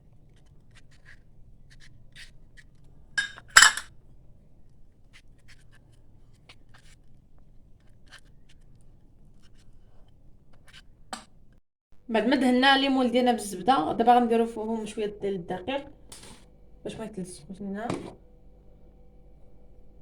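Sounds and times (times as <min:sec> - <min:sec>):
scrapes and clicks of cake molds: 0:00.0 - 0:11.6, 0:16.1 - 0:16.5.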